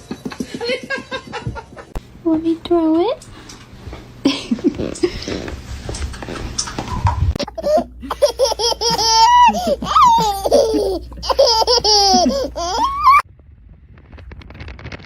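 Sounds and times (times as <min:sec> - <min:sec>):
person laughing high-pitched: 0:07.4 - 0:13.2.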